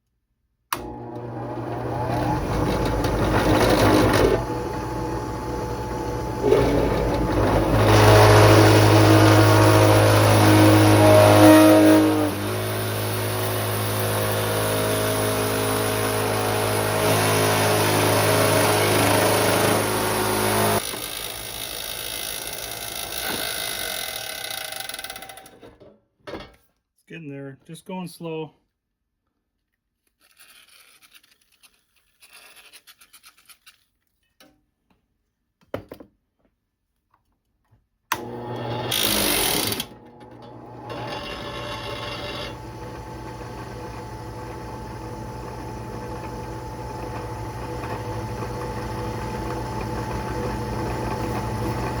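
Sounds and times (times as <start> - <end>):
drill press humming: 0.7 - 25.5, 38.1 - 52.0
drill bit whining through sheet metal: 0.8 - 25.5, 38.1 - 52.0.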